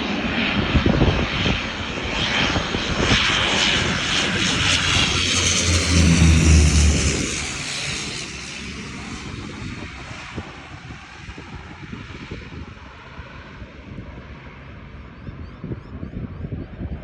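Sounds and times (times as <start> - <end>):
airliner engine rush: 0.0 - 17.0
wind buffeting microphone: 0.4 - 17.0.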